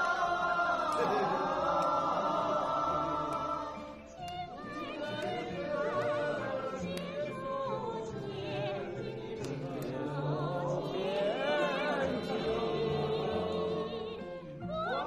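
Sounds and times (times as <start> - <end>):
choir-like chords: 0.0 - 15.0
solo voice singing with vibrato: 0.0 - 15.0.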